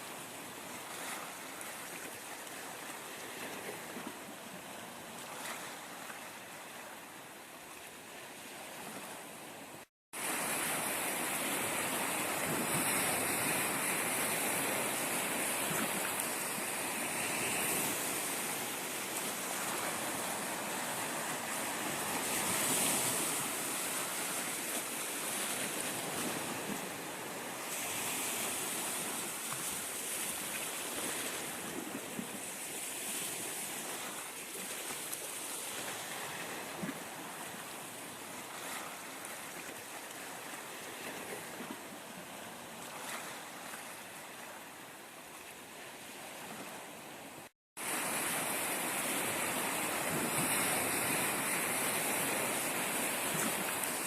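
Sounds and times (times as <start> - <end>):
wind: 0.0 - 54.0
surf washing onto shore: 10.2 - 41.8, 47.8 - 54.0.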